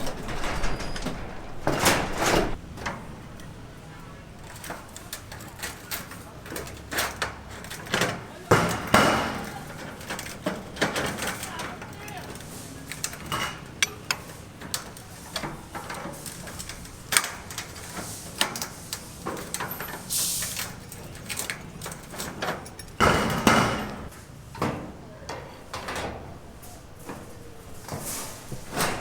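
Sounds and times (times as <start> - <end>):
loud clatter: 0.0 - 2.6
knocks taps and clanks: 0.0 - 3.0, 4.4 - 18.6.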